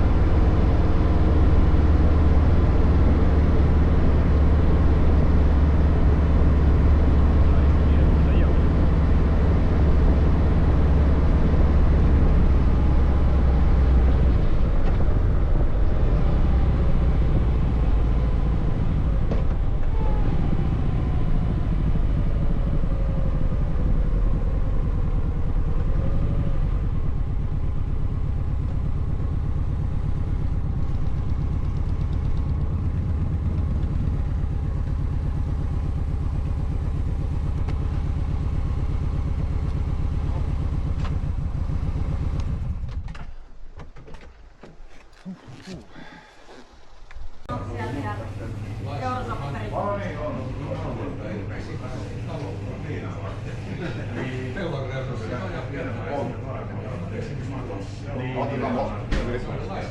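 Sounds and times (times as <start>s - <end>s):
motorcycle engine running: 0.0s - 43.1s.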